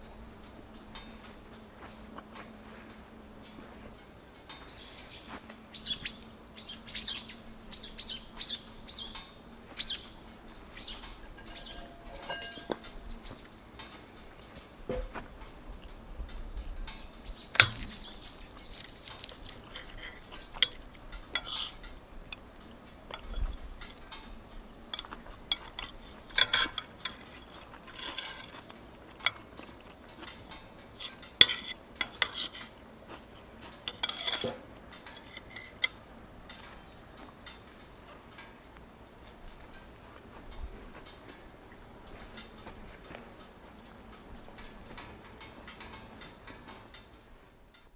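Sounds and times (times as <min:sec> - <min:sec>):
bird chirping: 0:04.6 - 0:14.7, 0:17.0 - 0:19.6, 0:20.3 - 0:20.8
metal cutlery clinking on dishes: 0:10.2 - 0:15.2, 0:16.9 - 0:22.0, 0:23.1 - 0:38.6.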